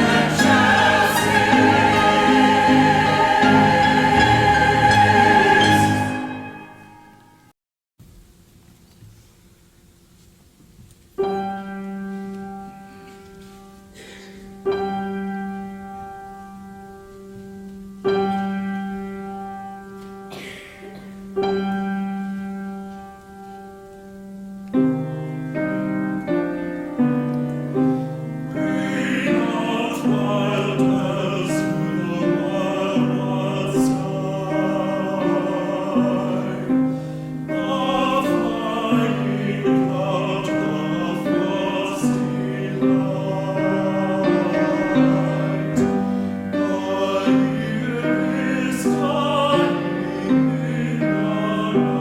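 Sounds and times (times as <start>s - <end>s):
choir singing: 0.0s - 7.4s, 28.5s - 52.0s
piano chords and accompaniment: 0.0s - 7.5s, 11.2s - 52.0s.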